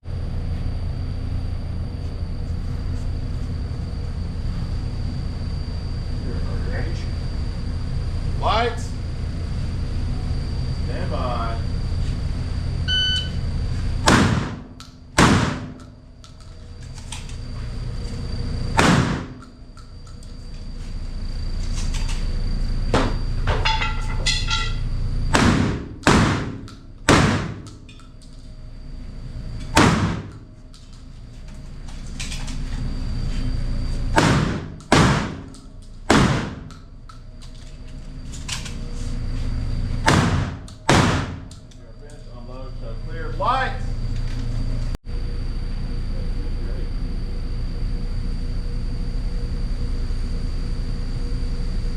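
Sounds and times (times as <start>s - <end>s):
rifle shots echoing indoors: 15.2s - 15.8s, 25.3s - 27.7s, 34.2s - 36.8s, 40.1s - 41.5s.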